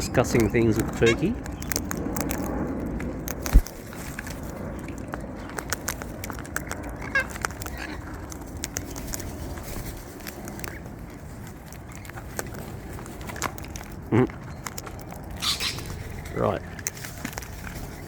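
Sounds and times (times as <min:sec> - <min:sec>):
beak and feet clicks and scrapes: 0:00.0 - 0:18.0
cockatoo squawk: 0:07.0 - 0:08.0, 0:15.4 - 0:15.9.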